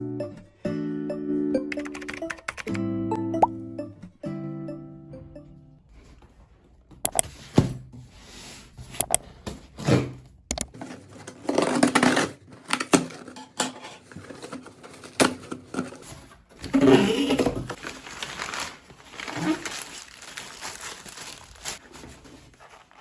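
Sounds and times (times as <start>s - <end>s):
cardboard and plastic rustling: 6.0s - 23.0s
sharp clicks and knocks: 7.0s - 7.2s.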